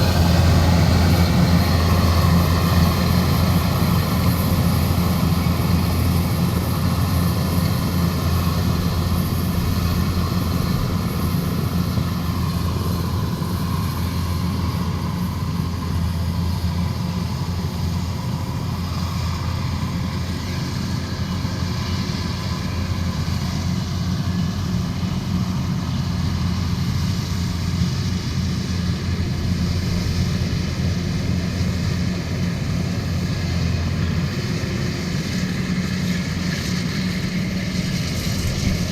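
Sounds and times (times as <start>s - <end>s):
diesel engine droning: 0.0s - 38.9s.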